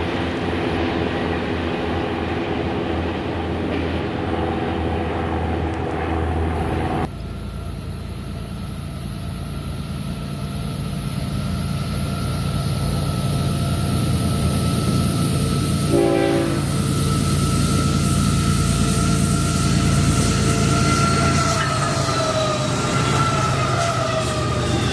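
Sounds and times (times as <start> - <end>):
diesel locomotives running: 0.0 - 24.9
locomotive horn blast: 15.9 - 24.9.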